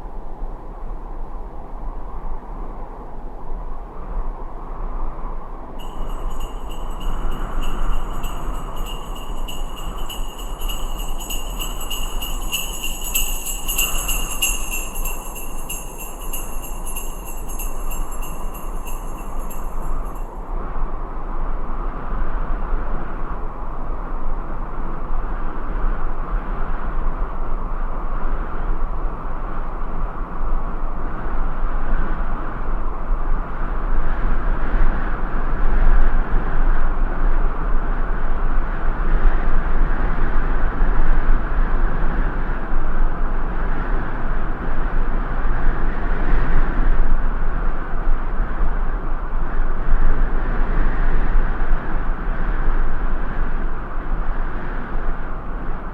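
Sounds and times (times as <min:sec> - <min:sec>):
rushing wind: 0:00.5 - 0:55.9
sleigh bells jingling: 0:05.8 - 0:20.3.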